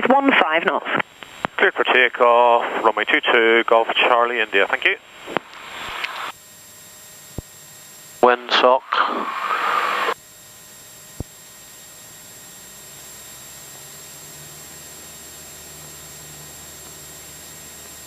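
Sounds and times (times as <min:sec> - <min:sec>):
aircraft cabin engine hiss: 0:00.9 - 0:06.3, 0:08.2 - 0:10.2.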